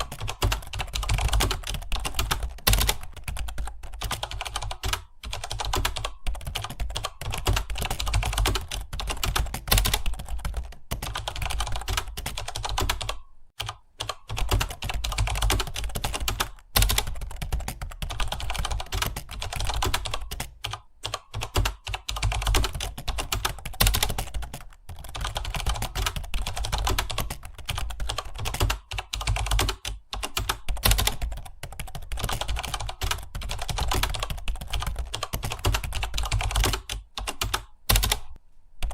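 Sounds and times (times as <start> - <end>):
fast typing on keyboard: 0.0 - 38.9.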